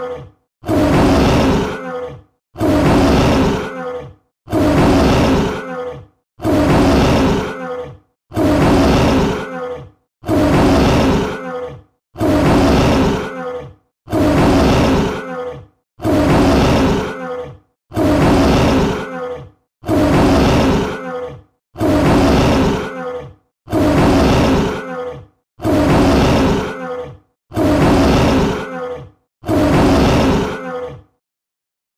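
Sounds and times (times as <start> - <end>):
tiger roar: 0.6 - 3.8, 4.5 - 7.7, 8.3 - 9.6, 10.2 - 11.5, 12.2 - 13.4, 14.1 - 19.2, 19.8 - 21.1, 21.8 - 23.0, 23.7 - 24.9, 25.6 - 26.8, 27.5 - 28.8, 29.4 - 30.9.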